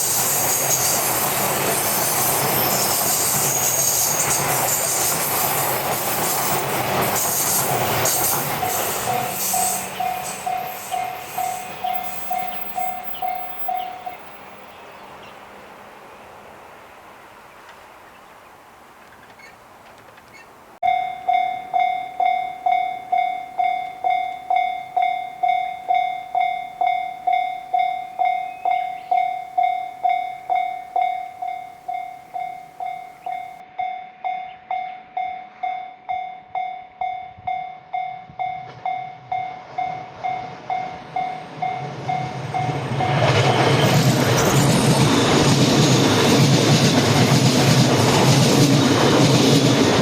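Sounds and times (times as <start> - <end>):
train rumble: 0.0 - 33.7, 37.0 - 50.0
level crossing bell ringing: 8.5 - 14.6, 20.8 - 42.3.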